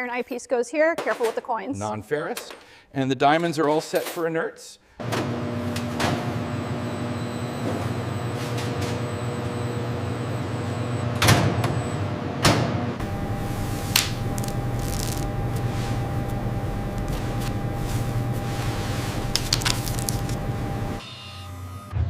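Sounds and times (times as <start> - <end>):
low hum: 13.0 - 21.0.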